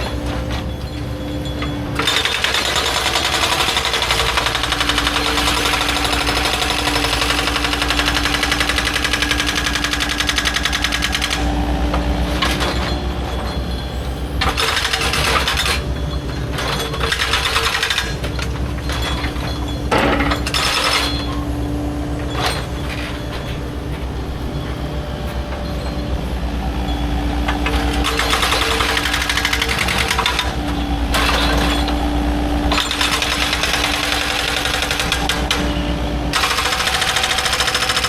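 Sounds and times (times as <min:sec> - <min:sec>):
heavy machine engine running: 0:00.0 - 0:38.0
loud metallic rattling: 0:27.6 - 0:38.0.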